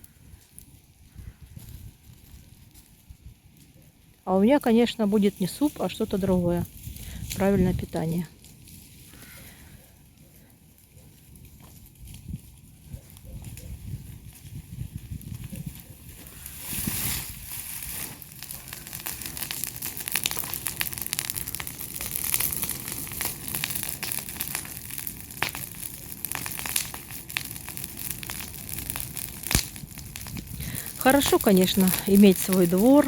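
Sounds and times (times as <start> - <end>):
dry brush crackling: 10.8 - 33.0
sharp snaps: 29.4 - 29.8.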